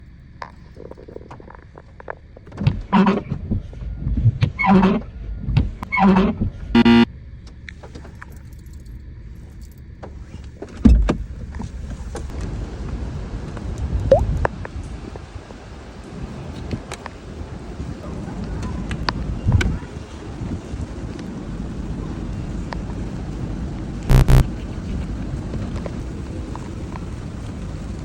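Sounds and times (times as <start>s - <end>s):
wiper blades squeaking on glass: 4.6s - 5.1s, 5.9s - 6.3s
short sharp tone: 6.8s - 7.1s, 24.1s - 24.5s.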